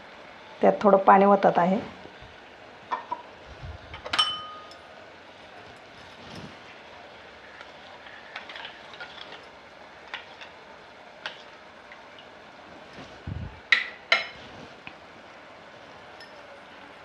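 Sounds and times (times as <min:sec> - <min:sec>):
spoon clinking on rim: 0:04.1 - 0:04.8
metal spoon stirring in metal pot: 0:07.5 - 0:10.6.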